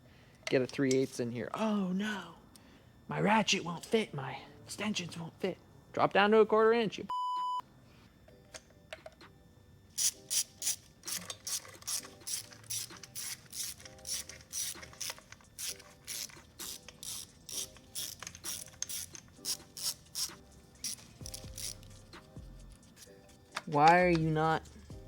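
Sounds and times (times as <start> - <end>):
ratchet clicking: 10.0 - 22.2.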